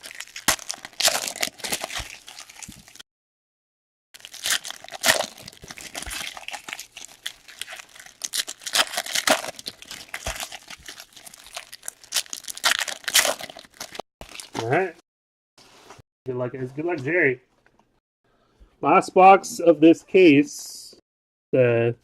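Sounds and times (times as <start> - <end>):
plastic wrapping crinkling and tearing: 0.0 - 3.0, 4.2 - 14.9.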